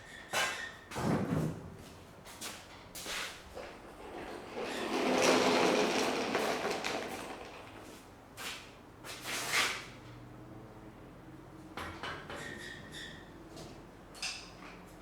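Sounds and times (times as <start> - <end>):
object scraping as it is dragged: 4.2 - 7.7.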